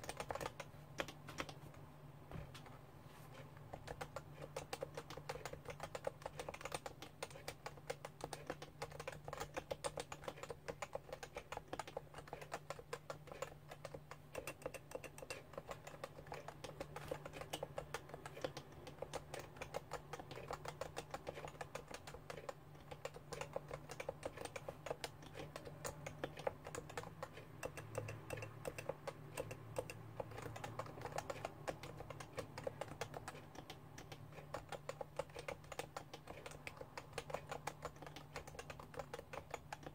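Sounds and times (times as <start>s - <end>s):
fast keyboard typing: 0.0s - 1.7s, 3.3s - 39.9s.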